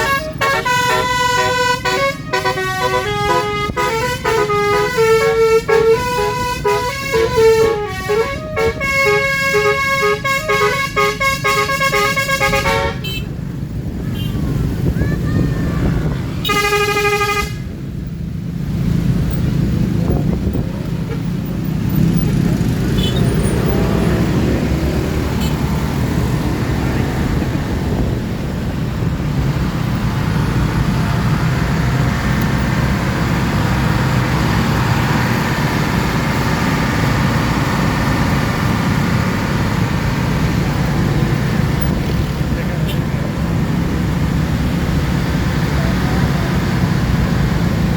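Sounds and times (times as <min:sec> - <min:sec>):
vehicle horn: 0:00.0 - 0:13.3, 0:16.4 - 0:17.7, 0:22.9 - 0:23.6, 0:25.4 - 0:25.7
road traffic rumble: 0:00.0 - 0:47.9.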